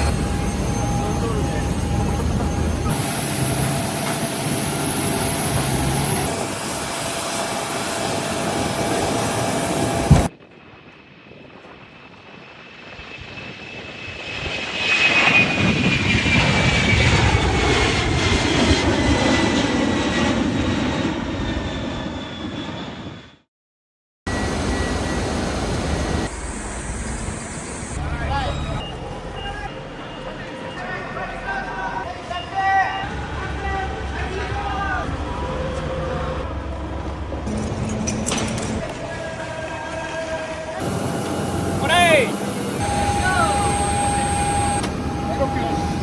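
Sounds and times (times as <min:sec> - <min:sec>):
steady engine noise: 0:00.0 - 0:10.3, 0:24.3 - 0:46.0
aircraft passing with whine: 0:00.0 - 0:23.5, 0:24.3 - 0:46.0.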